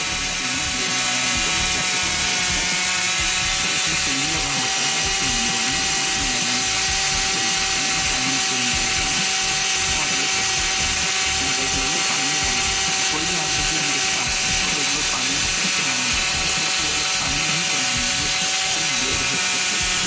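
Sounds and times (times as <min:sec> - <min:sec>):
concrete saw whining: 0:00.0 - 0:20.0.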